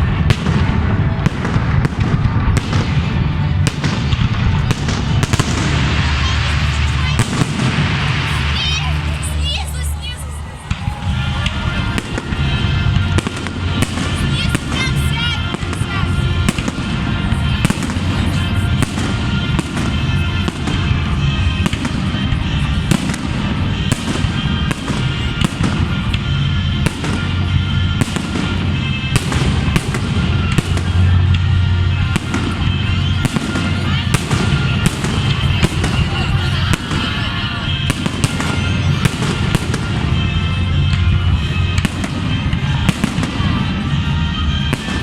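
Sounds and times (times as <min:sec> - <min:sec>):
fireworks bangs and crackling: 0:00.0 - 0:45.0
music: 0:00.0 - 0:45.0.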